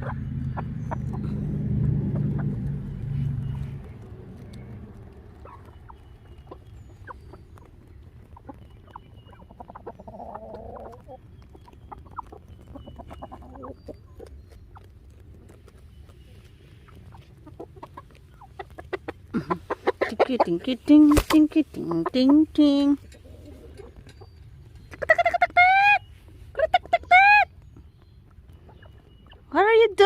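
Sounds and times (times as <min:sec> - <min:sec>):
low rumble: 0:00.0 - 0:09.6
chickens clucking: 0:00.0 - 0:30.0.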